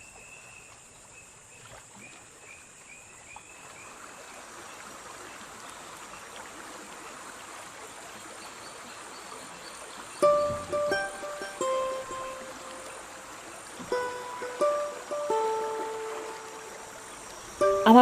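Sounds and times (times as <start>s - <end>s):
stream water running: 0.0s - 18.0s
high insect whine: 10.3s - 18.0s.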